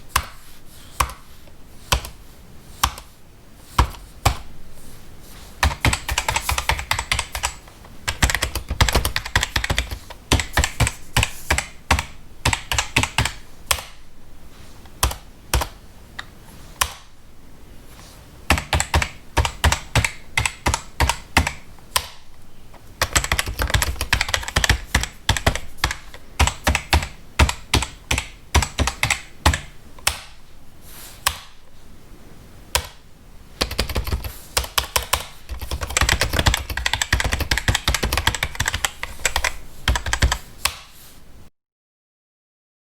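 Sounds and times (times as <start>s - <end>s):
keyboard typing clicks: 5.6s - 14.0s, 15.0s - 17.1s, 23.0s - 30.4s, 32.7s - 33.0s, 33.6s - 40.8s.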